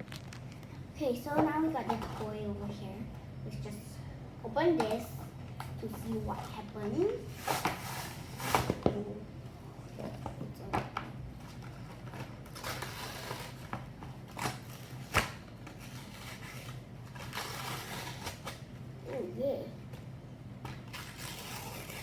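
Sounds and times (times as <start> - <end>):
packet rustling and tearing: 11.5 - 18.7.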